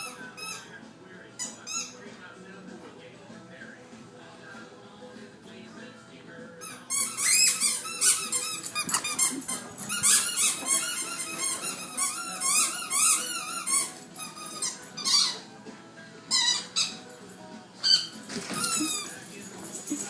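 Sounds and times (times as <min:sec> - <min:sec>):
rubber squeaky toy squeaking: 0:00.0 - 0:00.7, 0:01.4 - 0:02.0, 0:06.6 - 0:15.5, 0:16.3 - 0:17.1, 0:17.8 - 0:19.1.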